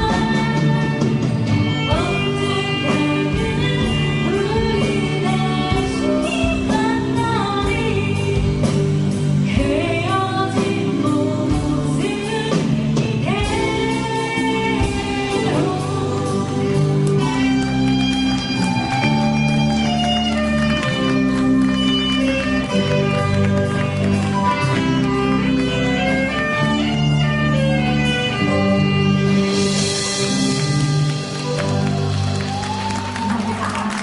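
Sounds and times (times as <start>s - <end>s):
person singing lead vocal: 0.0s - 17.6s
band playing held notes: 0.0s - 34.0s.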